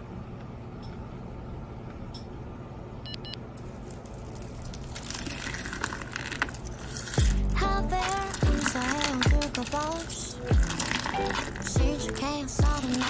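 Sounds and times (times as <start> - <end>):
low traffic rumble: 0.0 - 13.0
jingling and clinking: 3.6 - 13.0.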